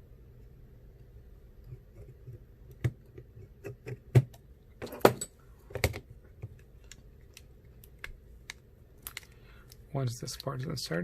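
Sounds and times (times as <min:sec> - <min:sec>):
small tools and parts clicking: 0:04.9 - 0:11.0.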